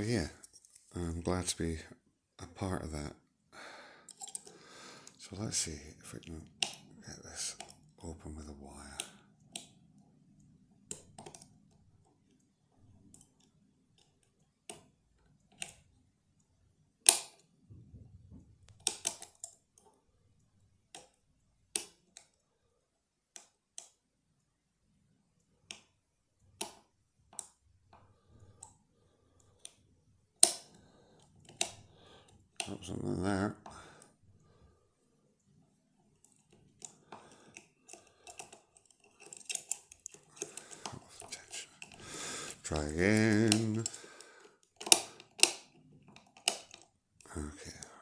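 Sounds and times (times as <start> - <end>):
lock pick clicking in lock: 17.1 - 17.4, 18.8 - 19.6, 30.4 - 30.8, 36.8 - 44.0, 44.6 - 46.9.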